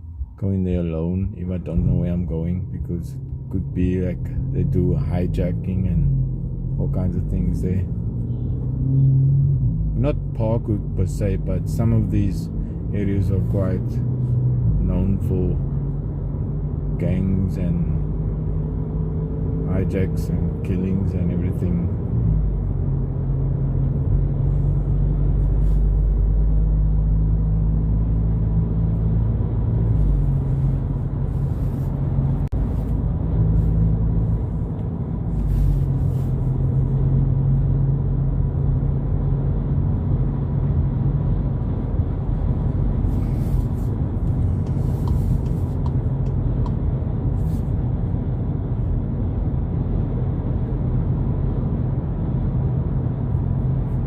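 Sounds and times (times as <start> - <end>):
car engine rumble: 0.0 - 54.0
road noise: 0.0 - 54.0.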